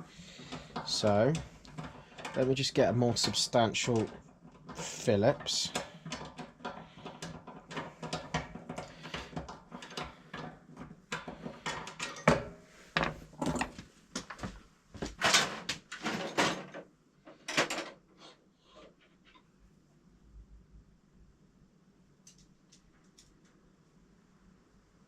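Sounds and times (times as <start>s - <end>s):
rummaging among hand tools: 0.0s - 16.8s.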